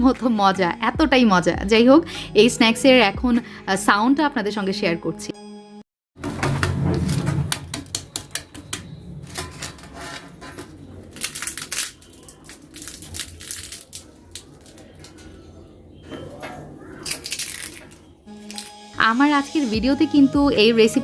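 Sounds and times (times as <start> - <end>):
pastry crunching: 7.8 - 15.6, 16.6 - 18.7.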